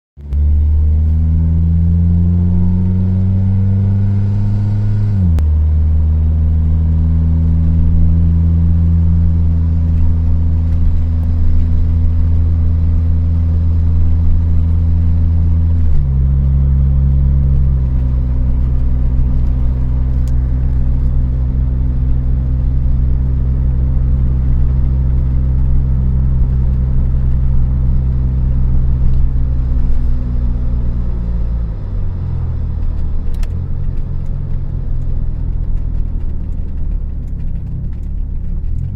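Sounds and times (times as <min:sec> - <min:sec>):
car engine revving: 0:00.2 - 0:38.9
engine tapping noise: 0:32.4 - 0:38.9.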